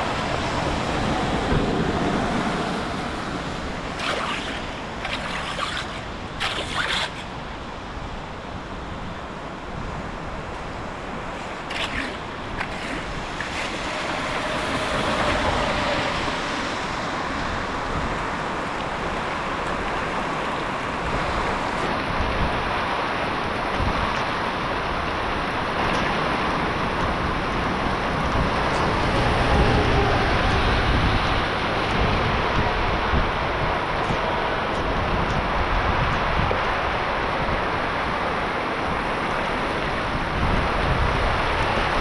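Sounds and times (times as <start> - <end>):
rushing water: 0.0 - 42.0.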